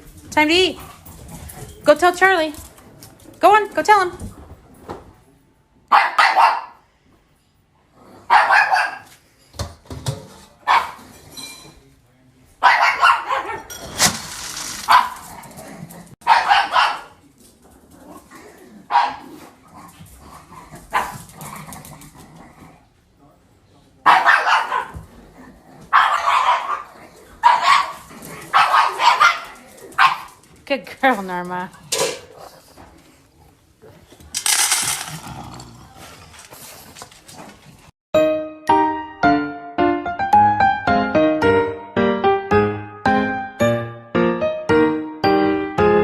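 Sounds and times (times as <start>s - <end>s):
dog barking: 5.9s - 6.8s, 8.3s - 9.1s, 10.6s - 11.0s, 12.6s - 13.7s, 14.9s - 15.2s, 16.2s - 17.2s, 18.9s - 19.4s, 20.9s - 21.2s, 24.0s - 25.0s, 25.9s - 30.4s.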